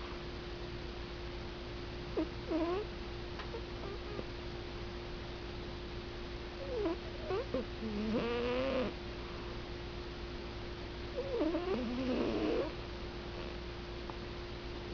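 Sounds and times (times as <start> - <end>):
snoring through stuffed nose: 2.5 - 2.8, 6.6 - 9.0, 11.2 - 12.8.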